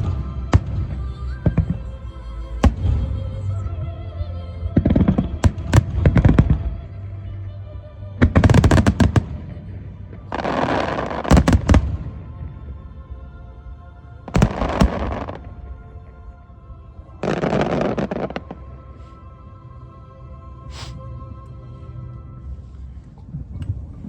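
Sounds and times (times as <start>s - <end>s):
background music: 0.0s - 24.0s
fireworks crackling hiss: 20.7s - 21.0s.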